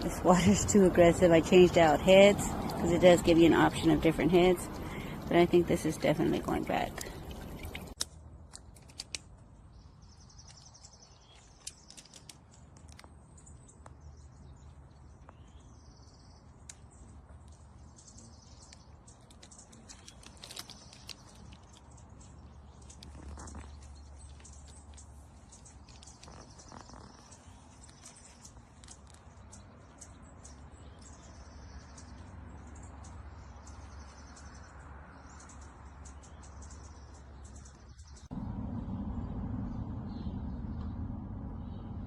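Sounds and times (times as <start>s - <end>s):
birds chirping: 0.0s - 8.0s, 9.6s - 42.0s
water droplets pattering: 0.0s - 8.0s.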